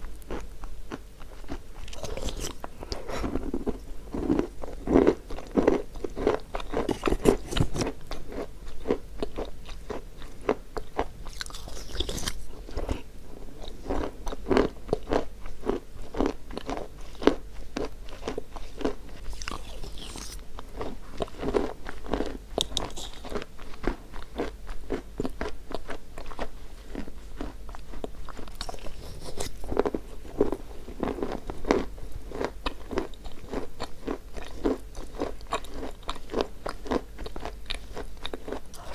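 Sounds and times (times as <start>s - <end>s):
chewing chalk crunches: 0.2s - 38.9s.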